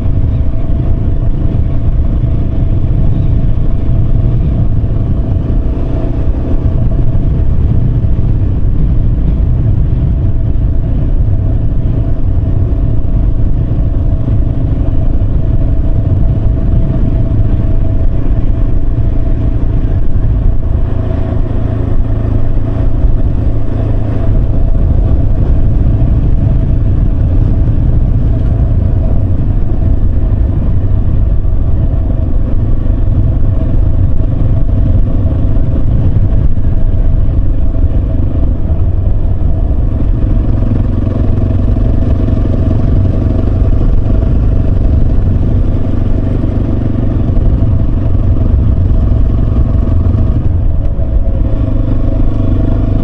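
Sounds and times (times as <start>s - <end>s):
motorcycle engine running: 0.0s - 53.0s.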